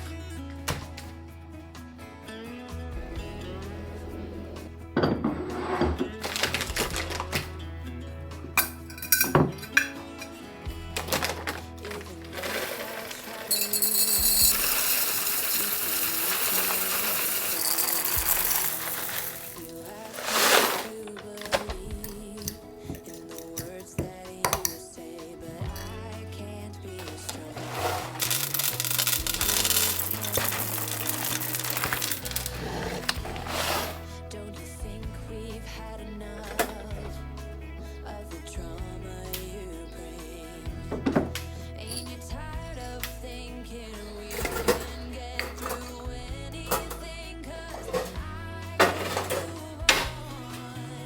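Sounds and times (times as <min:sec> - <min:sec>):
soft background music: 0:00.0 - 0:51.0
small hard objects rattling: 0:06.2 - 0:07.5, 0:10.9 - 0:24.8, 0:26.9 - 0:34.1, 0:44.3 - 0:47.1, 0:47.7 - 0:50.8
blender running: 0:12.3 - 0:20.8.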